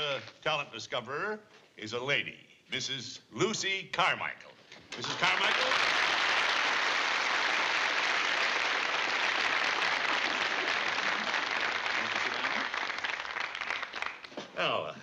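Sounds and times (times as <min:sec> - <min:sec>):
audience applauding: 0:04.9 - 0:14.5.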